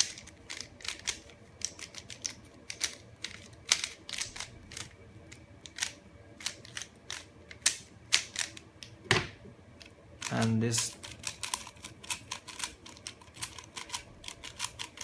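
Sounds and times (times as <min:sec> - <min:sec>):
plastic puzzle pieces clicking: 0:00.0 - 0:04.9, 0:05.6 - 0:08.9.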